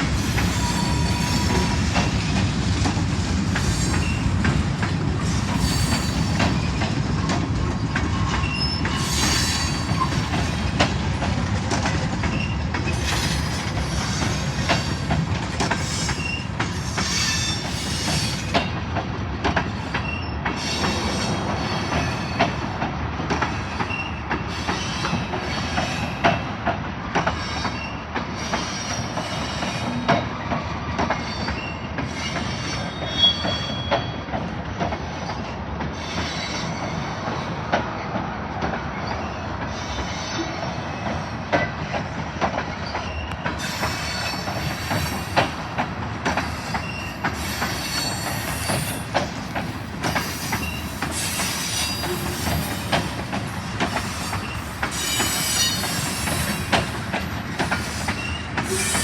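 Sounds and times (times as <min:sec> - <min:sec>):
railroad cars rumbling past: 0:00.0 - 0:59.0
high-pitched wheel squeals: 0:31.2 - 0:34.2, 0:50.1 - 0:53.0, 0:54.0 - 0:56.9, 0:57.7 - 0:59.0.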